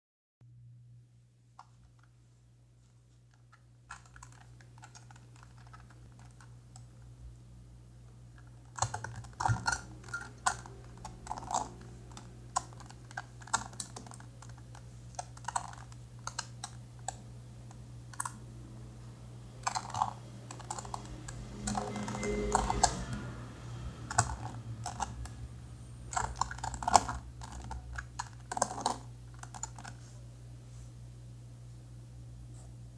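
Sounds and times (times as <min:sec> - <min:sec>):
steady low hum: 0:00.4 - 0:32.9.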